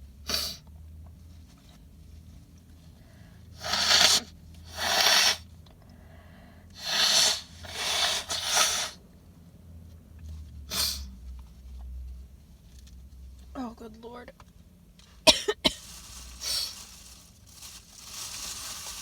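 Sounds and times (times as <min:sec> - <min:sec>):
air bursts through nose: 0:00.3 - 0:00.6, 0:03.5 - 0:05.5, 0:06.7 - 0:09.0, 0:10.7 - 0:11.1, 0:15.8 - 0:17.2.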